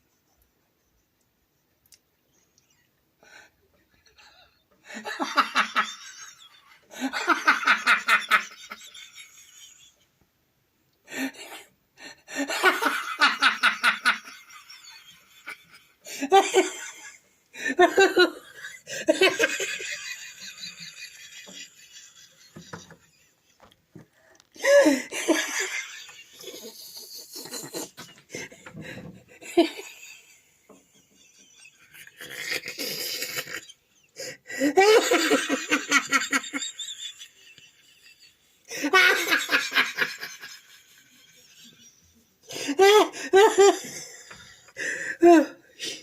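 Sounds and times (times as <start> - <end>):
person laughing hard: 12.3 - 23.0, 24.6 - 41.6, 42.6 - 44.4.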